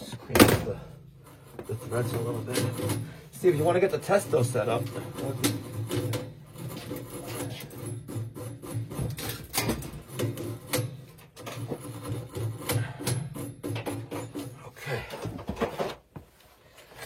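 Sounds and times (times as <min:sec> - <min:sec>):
wire brush scrubbing pipe threads: 0:01.2 - 0:14.8.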